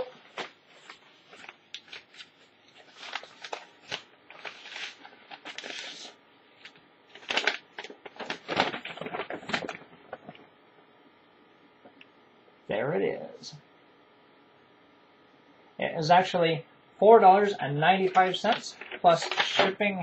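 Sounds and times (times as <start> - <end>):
padded envelope rustling: 0.2 - 10.4, 18.0 - 19.7.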